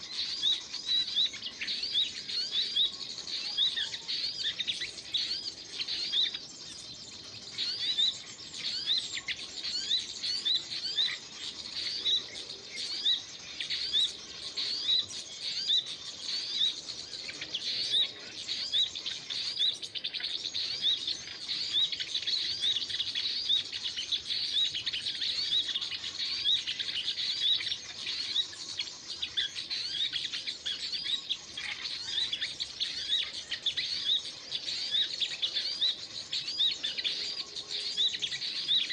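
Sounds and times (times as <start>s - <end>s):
background bird calls: 0.0s - 38.9s
songbird chirping: 0.0s - 38.9s.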